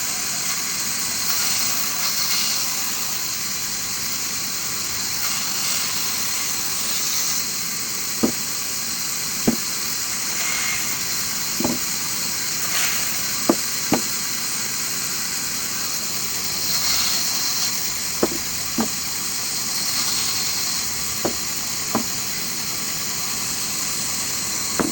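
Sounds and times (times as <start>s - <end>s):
wood-cutting machine hissing: 0.0s - 24.9s
sharp knocks: 8.2s - 8.6s, 9.5s - 9.8s, 11.6s - 11.9s, 13.5s - 14.2s, 18.0s - 19.2s, 21.2s - 22.4s.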